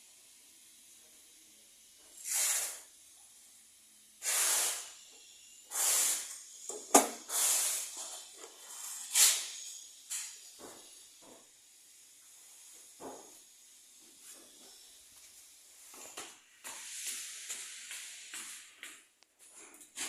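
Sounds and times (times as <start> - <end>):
short hissing bursts: 2.1 - 18.8.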